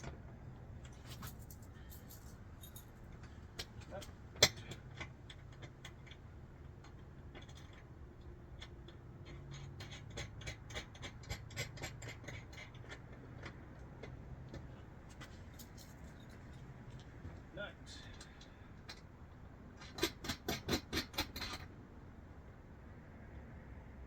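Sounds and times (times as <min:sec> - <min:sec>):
steady low hum: 0:00.0 - 0:19.9
small metal hardware clicking: 0:01.1 - 0:14.6.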